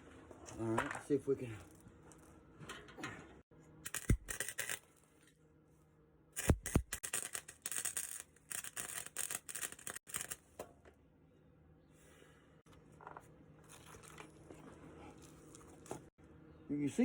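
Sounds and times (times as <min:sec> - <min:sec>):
arc welding crackling: 0:03.8 - 0:04.9, 0:06.4 - 0:10.5.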